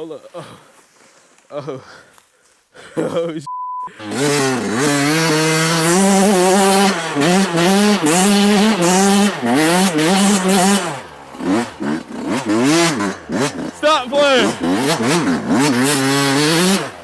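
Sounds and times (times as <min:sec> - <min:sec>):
dirt bike engine revving: 0:03.8 - 0:17.0.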